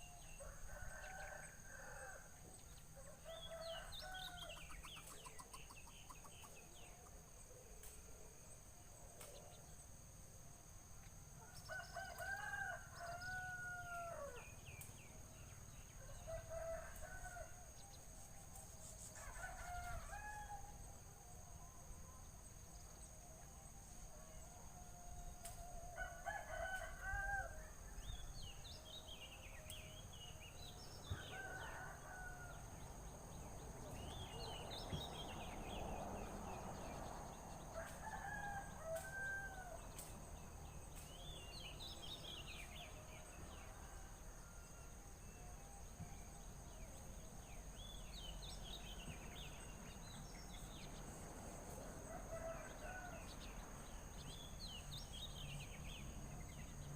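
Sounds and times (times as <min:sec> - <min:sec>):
rooster crowing: 0:00.4 - 0:02.3, 0:11.7 - 0:14.5, 0:19.2 - 0:20.7, 0:25.8 - 0:27.8, 0:31.1 - 0:32.7, 0:35.8 - 0:39.9.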